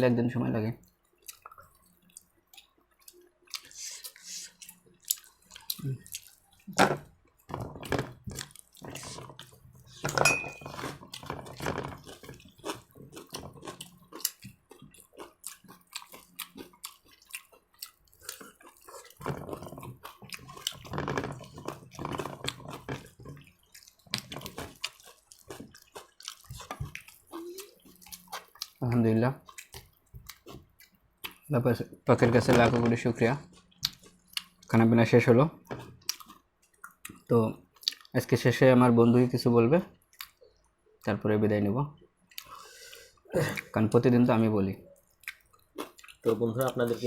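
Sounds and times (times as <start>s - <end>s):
plates and cutlery clinking: 10.0s - 11.0s.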